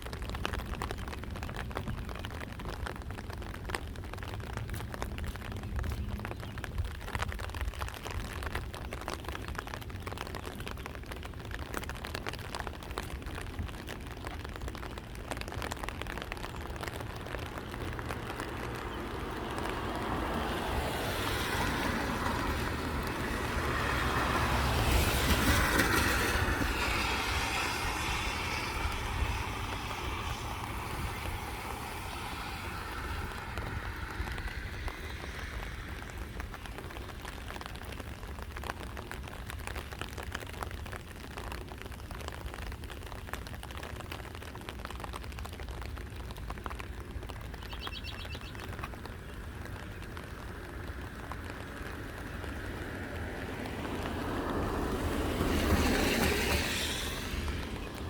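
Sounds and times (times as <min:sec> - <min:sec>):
vehicle passing by: 0:17.9 - 0:36.5, 0:51.1 - 0:58.0.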